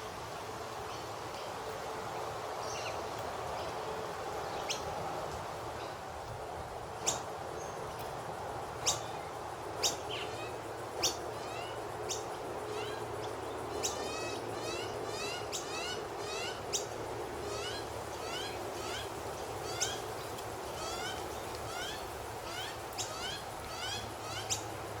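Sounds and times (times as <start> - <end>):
bird calling and chirping: 8.8 - 9.1, 9.8 - 13.0.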